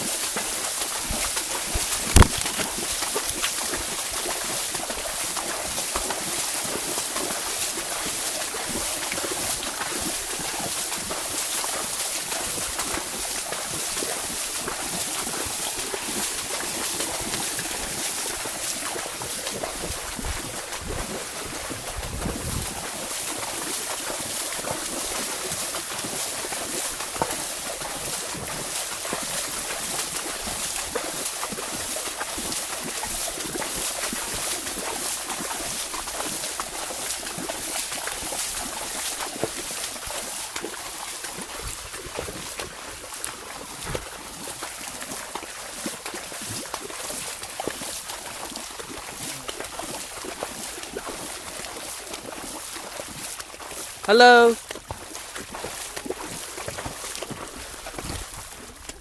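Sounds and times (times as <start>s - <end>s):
horse splashing through water: 0.0s - 59.0s
wind rumble on microphone: 19.6s - 23.0s.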